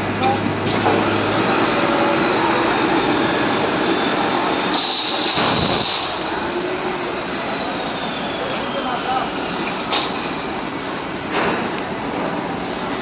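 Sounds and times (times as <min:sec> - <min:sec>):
loud hiss: 0:04.5 - 0:06.6
mechanical rumbling and clatter: 0:09.4 - 0:13.0.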